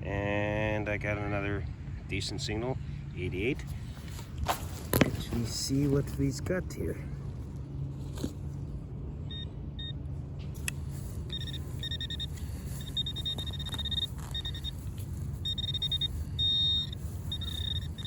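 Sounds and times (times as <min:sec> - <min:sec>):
metal detector probe beeping: 0:09.3 - 0:10.0, 0:10.6 - 0:18.0.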